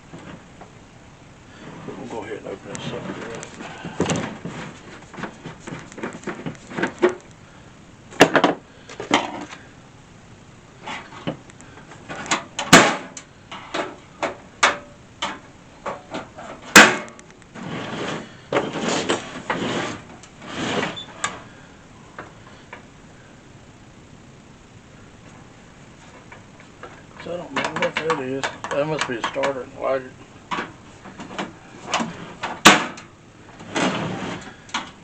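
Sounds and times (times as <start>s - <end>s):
scraping and rustling: 1.5s - 7.4s, 10.8s - 12.5s, 15.3s - 21.6s, 30.5s - 35.0s.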